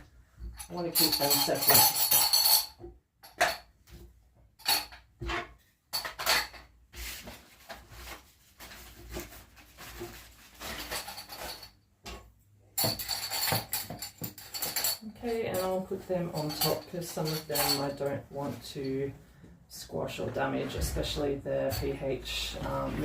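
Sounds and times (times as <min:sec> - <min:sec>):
hard objects clinking together: 0:00.4 - 0:03.7, 0:05.9 - 0:06.7, 0:10.6 - 0:12.2, 0:12.8 - 0:18.1.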